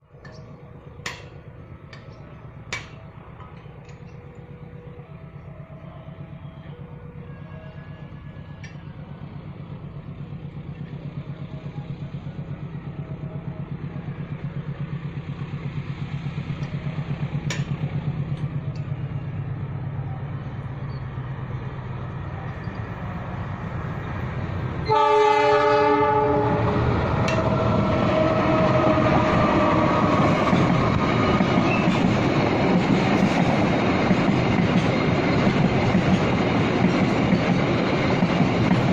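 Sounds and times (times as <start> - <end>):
locomotive engine rumble: 0.0 - 38.9
train wheel and car noise: 0.0 - 38.9
train horn blast: 4.4 - 9.1, 24.8 - 30.2.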